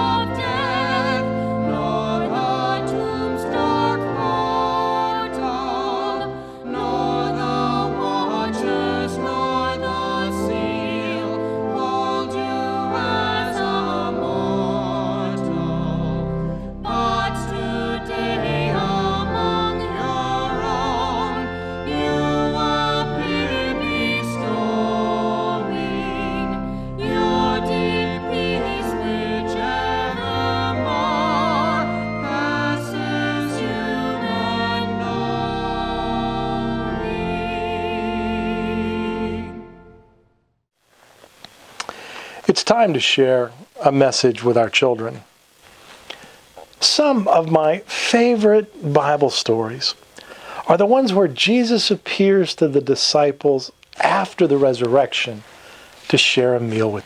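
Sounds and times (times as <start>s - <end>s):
classical singing with vibrato: 0.0s - 40.2s, 46.4s - 57.0s
sustained instrumental accompaniment: 0.0s - 40.4s.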